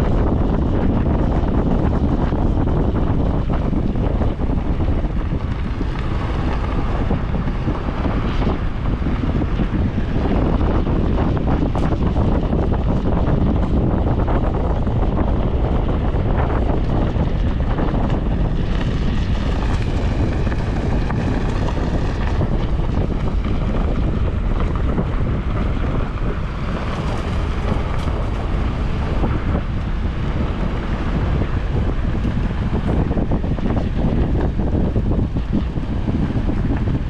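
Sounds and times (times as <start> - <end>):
road and engine noise: 0.0 - 37.0
wind buffeting microphone: 0.0 - 37.0.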